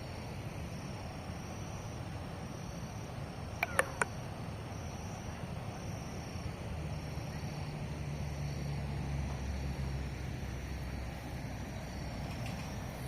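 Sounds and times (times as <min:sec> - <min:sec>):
low rumble of riverside ambience: 0:00.0 - 0:13.0.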